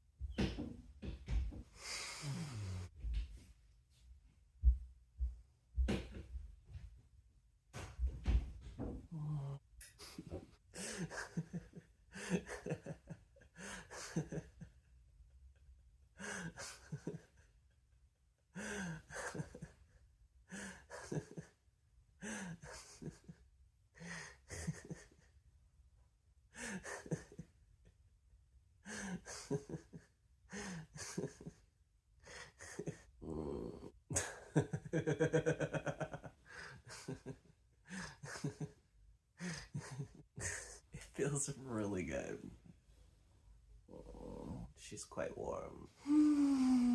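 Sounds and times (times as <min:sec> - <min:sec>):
person laughing breathily: 0:10.0 - 0:14.8, 0:16.2 - 0:17.5, 0:18.5 - 0:19.8, 0:20.5 - 0:21.5, 0:22.2 - 0:23.4, 0:24.0 - 0:25.3, 0:26.6 - 0:27.5, 0:28.8 - 0:31.6, 0:32.2 - 0:33.1, 0:34.1 - 0:38.8, 0:39.4 - 0:41.1, 0:46.0 - 0:46.9.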